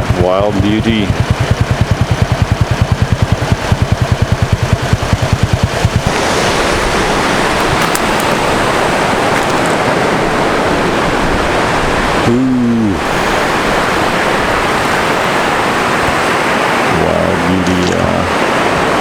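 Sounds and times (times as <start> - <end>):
strong wind on microphone: 4.3 - 19.0.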